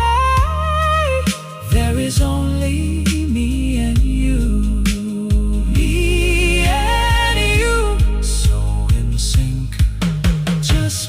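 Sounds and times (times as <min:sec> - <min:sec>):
slow love ballad: 0:00.0 - 0:11.0.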